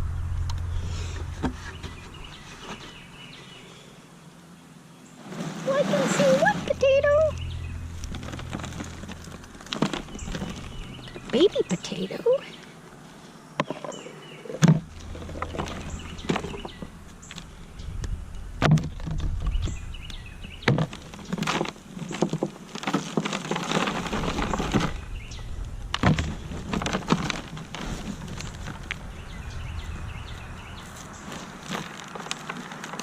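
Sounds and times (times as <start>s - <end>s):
hands rummaging through soil: 0.6s - 3.6s, 5.1s - 33.0s.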